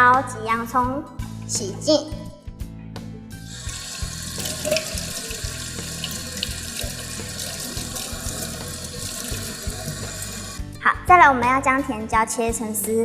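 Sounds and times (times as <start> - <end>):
tap water running into sink: 3.5 - 10.6.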